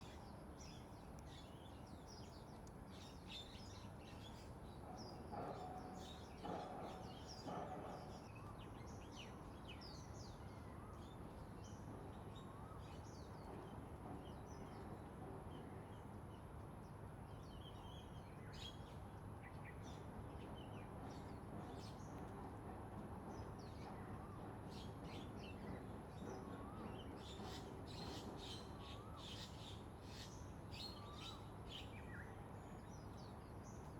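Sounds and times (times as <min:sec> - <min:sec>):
faint steady background noise: 0:00.0 - 0:33.9.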